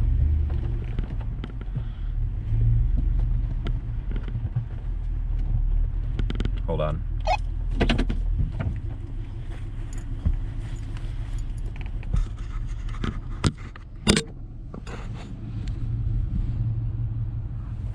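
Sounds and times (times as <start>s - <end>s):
sharp clicks and knocks: 11.8s - 14.9s.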